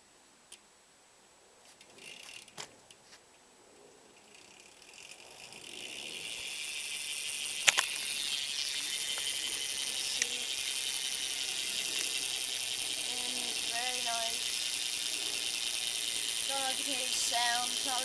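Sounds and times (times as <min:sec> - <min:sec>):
bike hub ratchet buzz: 0:02.0 - 0:02.6, 0:04.2 - 0:18.0
sharp click: 0:07.6 - 0:08.0.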